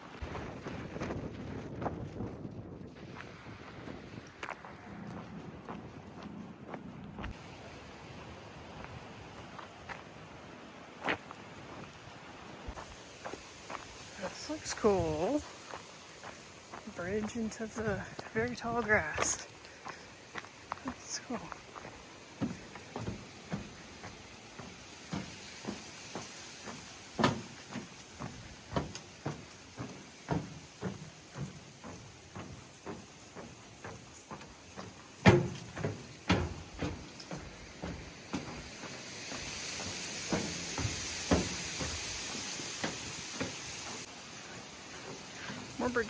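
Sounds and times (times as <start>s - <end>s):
footsteps on footbridge: 0.0s - 46.0s
high hiss: 7.4s - 46.0s
heavy knock: 34.8s - 38.6s.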